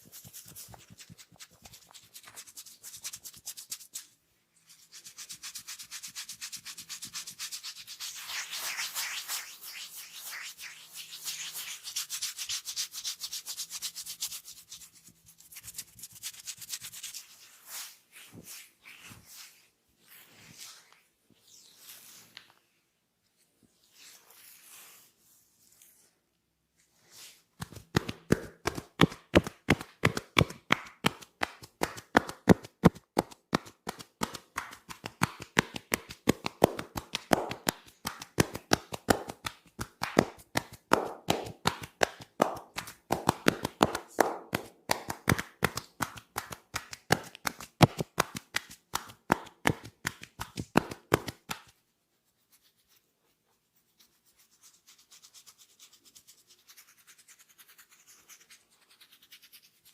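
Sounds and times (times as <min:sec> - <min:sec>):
hands tapping and slapping on body: 0:27.6 - 0:51.8.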